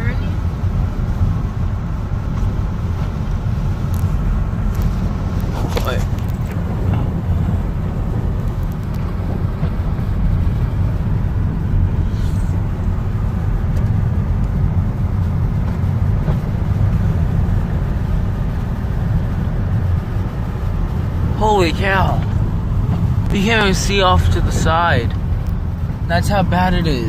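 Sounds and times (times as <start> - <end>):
engine and tyre rumble: 0.0 - 27.0.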